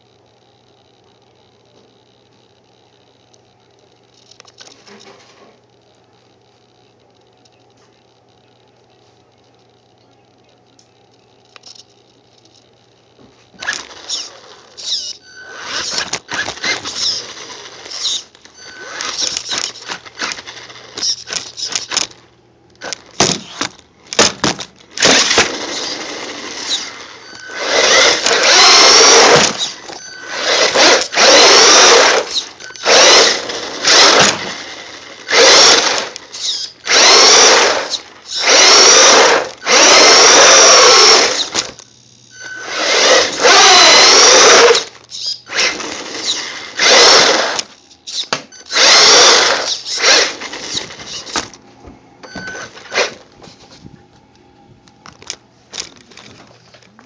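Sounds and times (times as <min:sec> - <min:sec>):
electric motor whining: 0:13.6 - 0:22.2, 0:24.9 - 0:51.6.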